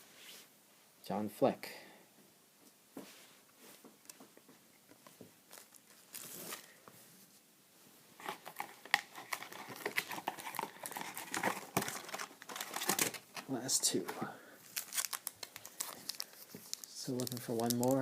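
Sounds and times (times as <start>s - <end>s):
wrapper crinkling and tearing: 5.4s - 6.8s, 8.2s - 13.5s, 14.6s - 18.0s.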